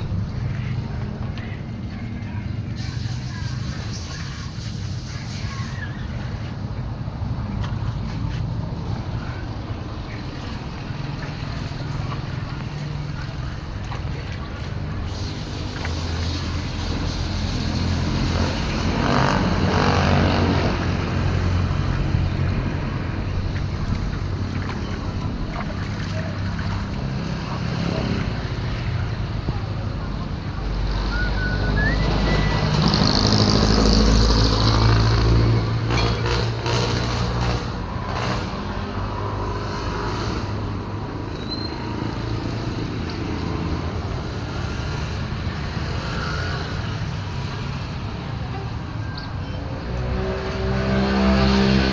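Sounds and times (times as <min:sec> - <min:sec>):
vehicle engine running: 0:00.0 - 0:30.7
road noise: 0:00.0 - 0:51.9.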